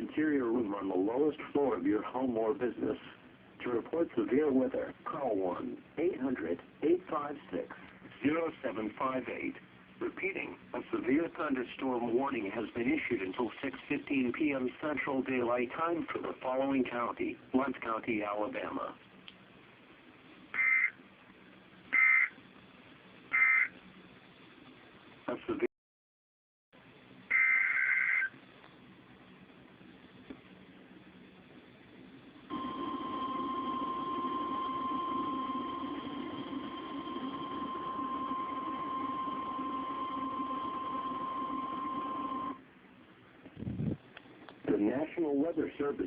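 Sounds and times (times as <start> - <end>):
faint steady hum: 0.0 - 25.7, 26.8 - 46.0
digital squawk bursts: 20.6 - 21.0, 21.9 - 22.4, 23.3 - 23.7, 27.3 - 28.4
high steady alarm beep: 32.5 - 42.6.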